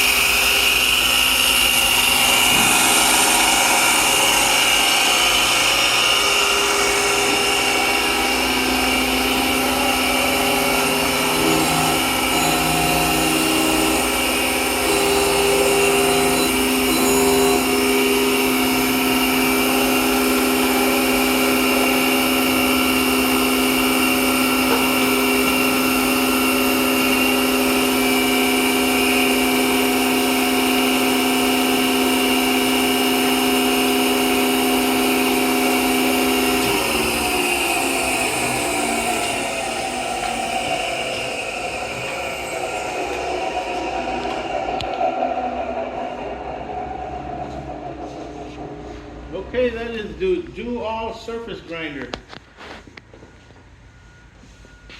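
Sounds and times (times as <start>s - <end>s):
surface grinder running: 0.0s - 50.4s
low hum: 1.6s - 28.3s, 34.7s - 50.6s.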